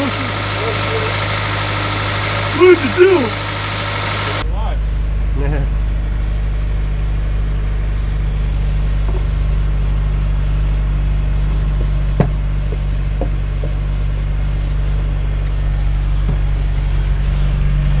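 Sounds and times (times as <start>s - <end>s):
car engine idling: 0.0s - 4.4s.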